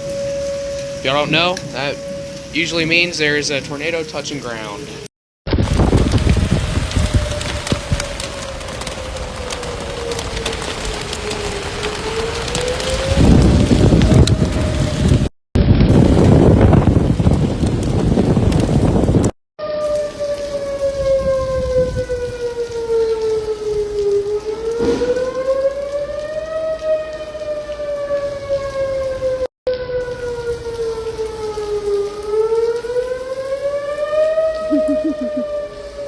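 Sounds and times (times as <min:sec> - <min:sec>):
steady rain: 0:00.0 - 0:15.3, 0:15.9 - 0:19.3, 0:19.9 - 0:29.3, 0:30.1 - 0:36.0
warning siren wailing: 0:00.0 - 0:15.3, 0:19.6 - 0:36.0
loud rush of noise: 0:24.8 - 0:25.5.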